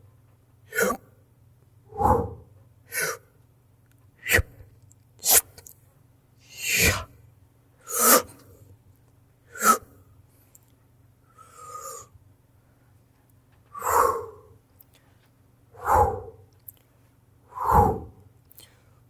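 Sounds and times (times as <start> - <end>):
mouth-made whoosh: 1.9 - 2.5, 17.5 - 18.2.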